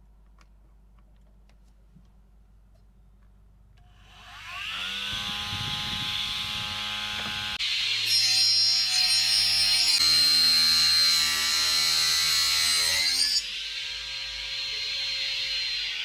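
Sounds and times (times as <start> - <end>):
electric saw motor whining: 3.9 - 12.1
saw blade cutting wood: 3.9 - 16.0.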